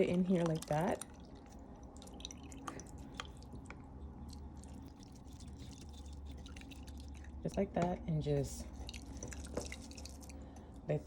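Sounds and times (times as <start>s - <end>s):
water dripping: 0.0s - 7.6s
low steady hum: 0.0s - 11.0s.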